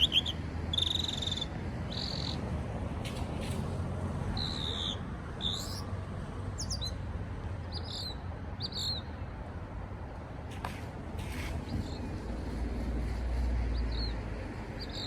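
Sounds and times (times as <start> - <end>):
songbird whistling phrases: 0.0 - 2.4.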